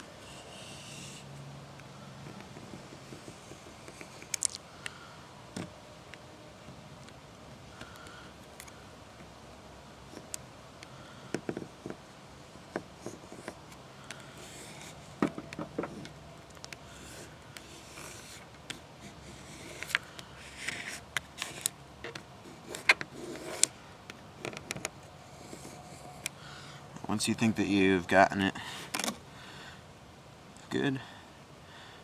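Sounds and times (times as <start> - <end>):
plastic card scraping on glass: 16.9 - 23.7.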